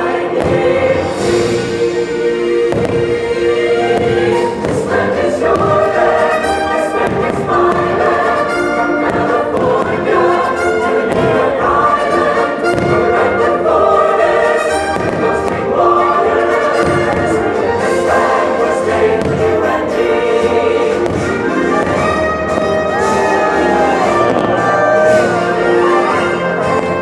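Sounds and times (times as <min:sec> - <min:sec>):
choir singing with orchestra: 0:00.0 - 0:27.0
firework bursts: 0:00.0 - 0:27.0.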